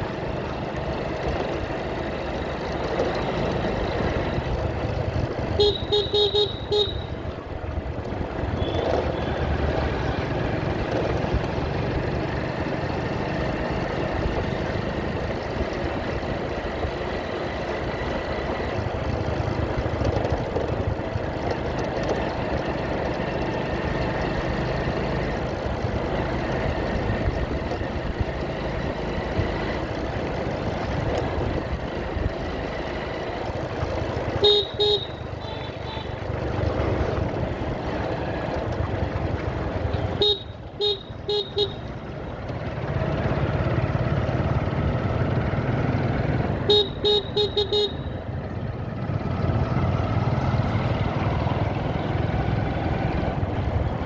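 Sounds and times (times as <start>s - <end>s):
motorcycle engine running: 0.0s - 54.0s
wind and road noise: 0.0s - 54.0s
vehicle horn beeping: 5.5s - 7.3s, 8.4s - 9.6s, 34.3s - 36.3s, 39.8s - 42.0s, 46.6s - 48.2s.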